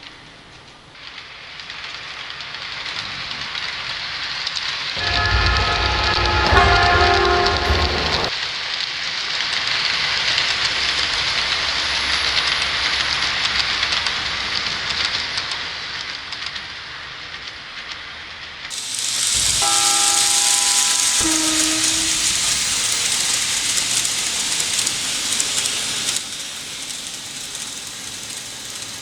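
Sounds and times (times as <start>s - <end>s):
train horn chord: 5.0s - 8.3s, 18.8s - 26.2s
train rushing on rails: 5.0s - 8.8s, 18.7s - 29.0s.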